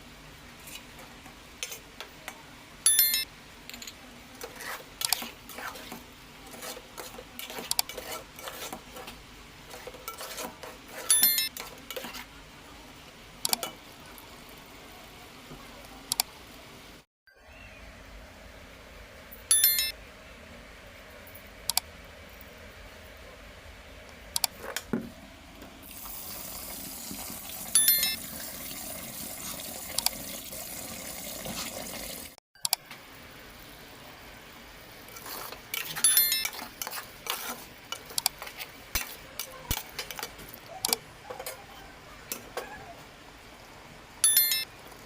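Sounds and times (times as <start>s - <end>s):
sharp metallic clinks: 2.9s - 3.9s, 11.1s - 11.5s, 19.5s - 20.0s, 36.0s - 36.5s, 44.2s - 44.7s.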